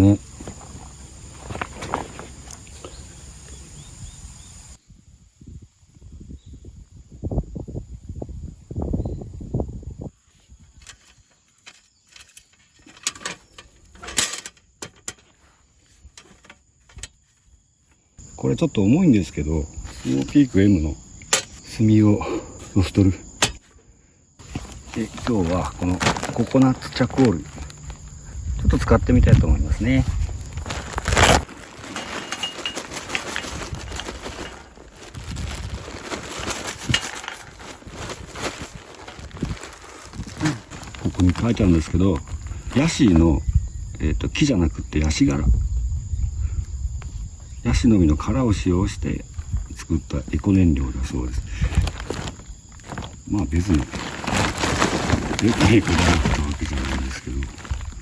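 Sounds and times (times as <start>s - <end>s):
package rustling: 24.4s - 42.6s, 51.4s - 58.0s.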